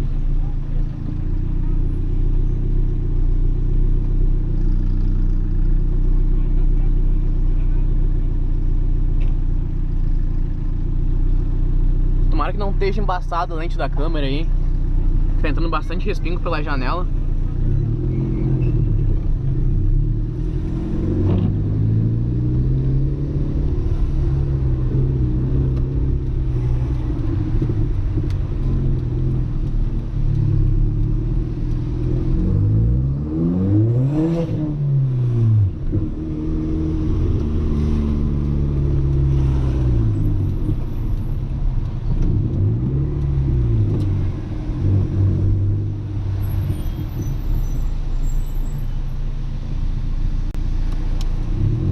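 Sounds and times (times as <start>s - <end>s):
car engine revving: 16.5s - 47.8s.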